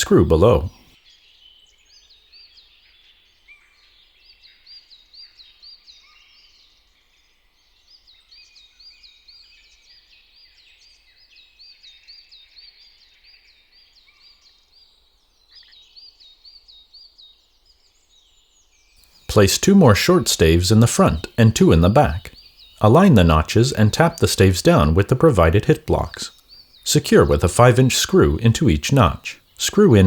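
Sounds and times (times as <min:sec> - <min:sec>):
birds chirping: 0:00.0 - 0:00.8, 0:19.3 - 0:30.0.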